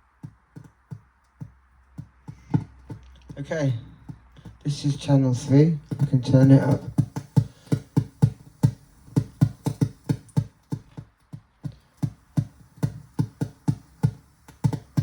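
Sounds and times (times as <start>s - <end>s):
drum hits: 4.7s - 11.0s, 12.0s - 15.0s.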